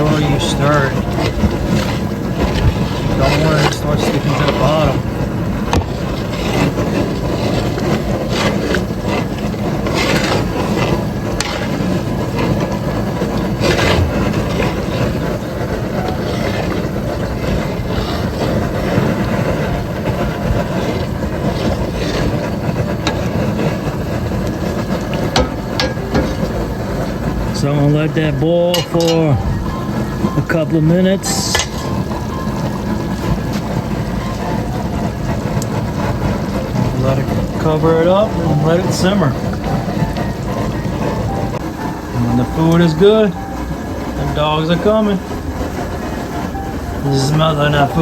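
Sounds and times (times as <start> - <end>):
utensil scraping pot bottom: 0.0 - 27.1
steady rushing noise: 0.0 - 48.0.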